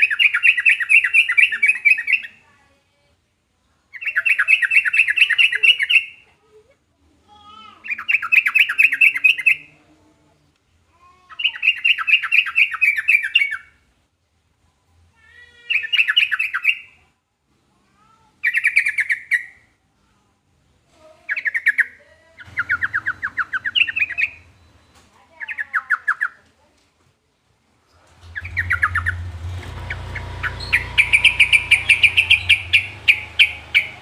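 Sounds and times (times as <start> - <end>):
bird singing rapid notes: 0.0 - 2.4, 4.0 - 6.2, 21.3 - 24.8, 28.2 - 34.0.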